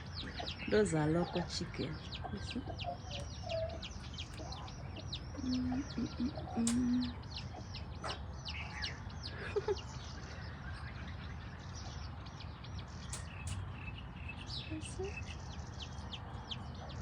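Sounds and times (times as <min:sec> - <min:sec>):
hen clucking: 0:00.0 - 0:12.2, 0:15.8 - 0:17.0
chicks peeping: 0:00.0 - 0:17.0.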